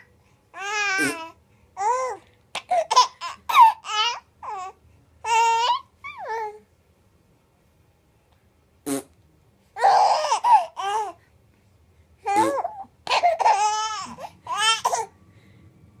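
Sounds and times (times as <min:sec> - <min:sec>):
baby laughing and squealing: 0:09.8 - 0:11.1, 0:12.3 - 0:15.1.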